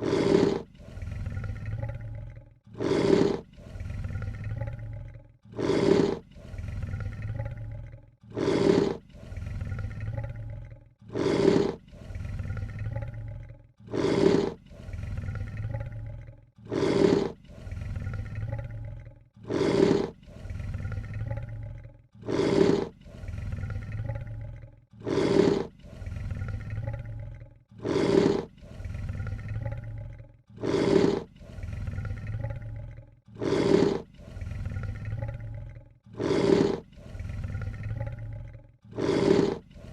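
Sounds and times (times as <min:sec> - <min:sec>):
lion hissing: 0:00.0 - 0:01.9, 0:02.7 - 0:04.8, 0:05.5 - 0:07.6, 0:08.3 - 0:10.2, 0:11.1 - 0:13.1, 0:13.8 - 0:15.8, 0:16.6 - 0:18.6, 0:19.4 - 0:21.4, 0:22.2 - 0:24.3, 0:25.0 - 0:27.2, 0:27.8 - 0:29.9, 0:30.6 - 0:32.7, 0:33.3 - 0:35.5, 0:36.1 - 0:38.3, 0:38.9 - 0:39.9.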